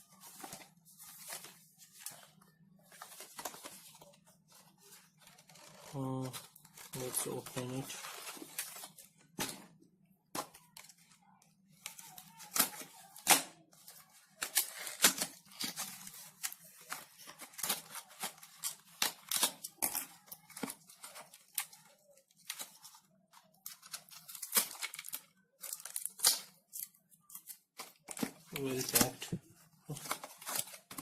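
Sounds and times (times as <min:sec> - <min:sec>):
packaging being ripped open: 0:23.9 - 0:26.6.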